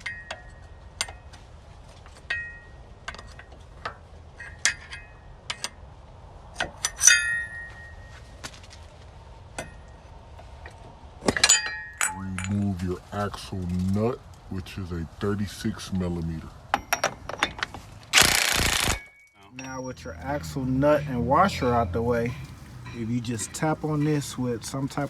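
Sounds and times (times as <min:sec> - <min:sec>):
metal tools clinking on metal: 0:11.4 - 0:12.8, 0:16.7 - 0:17.8, 0:19.1 - 0:25.0.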